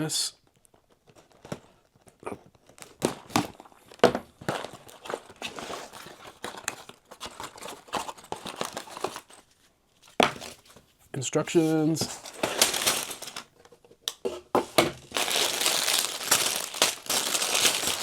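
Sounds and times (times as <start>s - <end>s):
plastic packaging crinkling: 0.5s - 10.8s, 11.5s - 13.7s, 14.9s - 18.0s.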